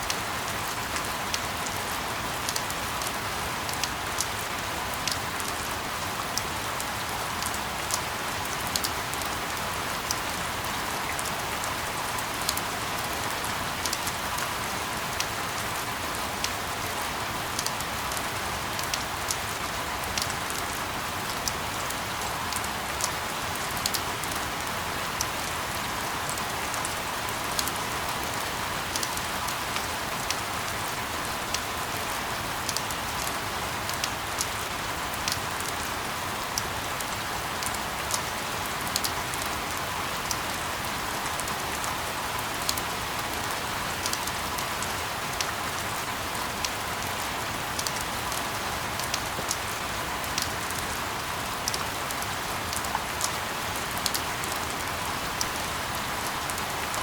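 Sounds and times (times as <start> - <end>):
steady rain hiss: 0.0 - 57.0
raindrop ticks: 54.0 - 54.6.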